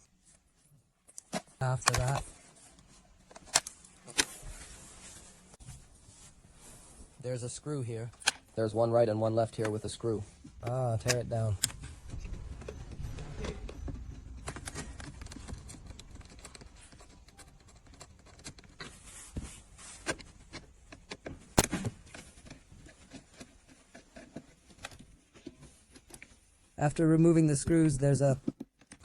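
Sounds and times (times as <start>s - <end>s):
screwdriver clicks and scrapes: 1.1s - 2.2s, 10.6s - 21.3s
plastic trim being handled: 1.1s - 5.2s.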